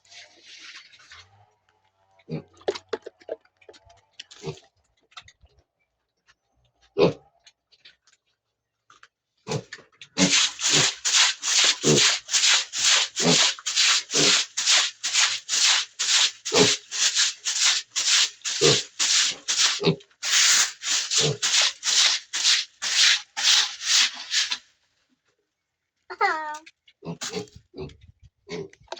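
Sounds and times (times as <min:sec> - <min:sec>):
pig chewing noisily: 0:09.5 - 0:24.1.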